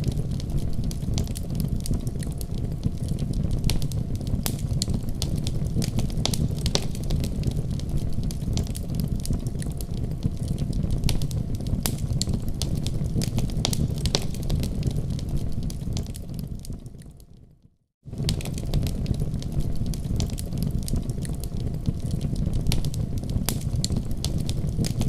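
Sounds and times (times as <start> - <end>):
fire flames rumbling: 0.0 - 17.4, 18.0 - 25.0
fire popping and snapping: 0.0 - 25.0.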